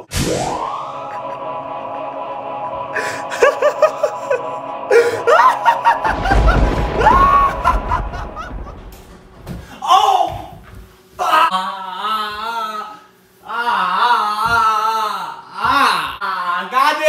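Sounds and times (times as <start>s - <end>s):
heavy low rumble: 0.3s - 9.7s
dramatic music with held chord: 0.5s - 9.0s
man laughing like a villain: 0.9s - 1.8s, 2.9s - 8.9s.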